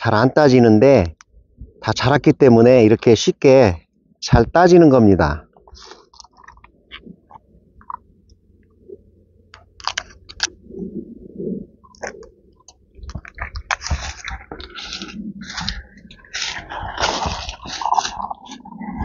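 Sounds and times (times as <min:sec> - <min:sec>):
rustling and crunching: 0:11.7 - 0:19.0.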